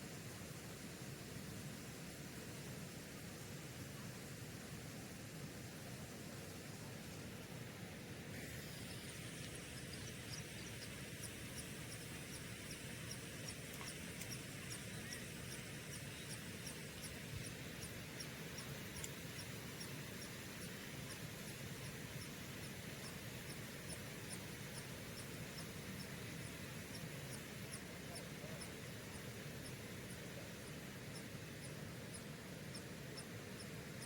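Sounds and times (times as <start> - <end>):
steady background hiss: 0.0 - 34.0.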